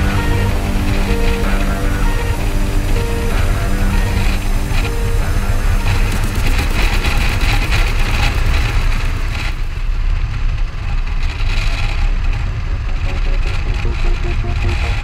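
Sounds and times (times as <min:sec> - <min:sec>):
motorcycle engine running: 0:00.0 - 0:09.5
wind rumble: 0:00.0 - 0:15.0.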